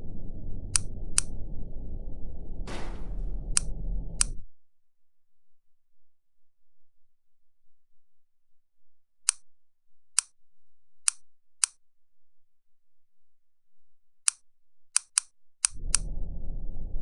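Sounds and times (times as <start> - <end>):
low rumble: 0.0 - 4.6, 15.7 - 17.0.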